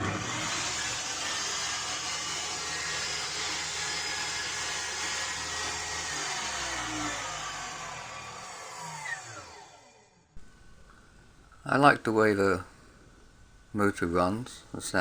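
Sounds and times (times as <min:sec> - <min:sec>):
table saw running and spinning down: 0:00.0 - 0:10.2.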